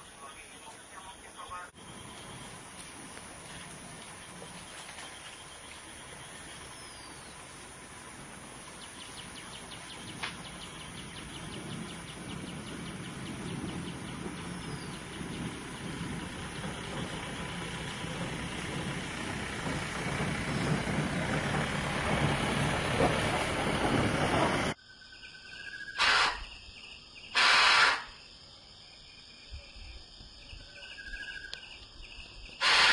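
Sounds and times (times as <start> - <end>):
rapid high ticking calls: 0.0 - 22.8, 25.8 - 26.5, 27.3 - 28.2, 32.6 - 32.9
low engine rumble: 0.0 - 24.8
high insect chorus: 0.0 - 32.9
short loud noise bursts: 26.0 - 26.5, 27.3 - 28.2, 32.6 - 32.9.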